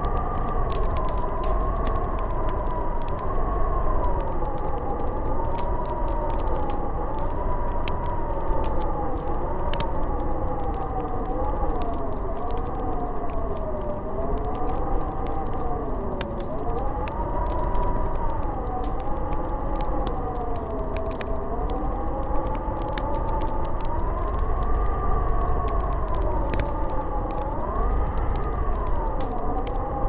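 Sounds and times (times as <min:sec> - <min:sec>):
howling wind: 0:00.0 - 0:30.0
sharp crackles: 0:00.0 - 0:30.0.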